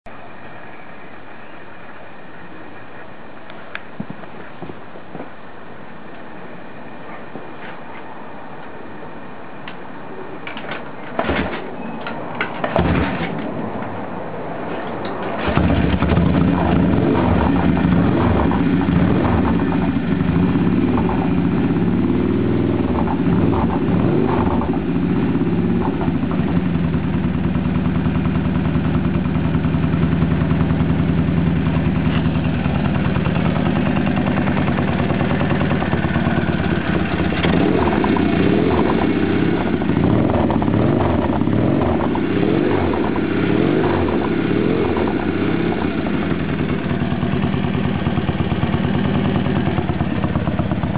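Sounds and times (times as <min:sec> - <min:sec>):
motorcycle engine idling: 0:15.4 - 0:50.9.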